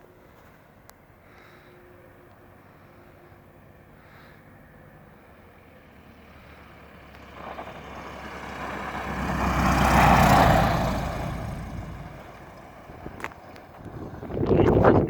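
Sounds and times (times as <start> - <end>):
propeller airplane engine: 7.7 - 14.6.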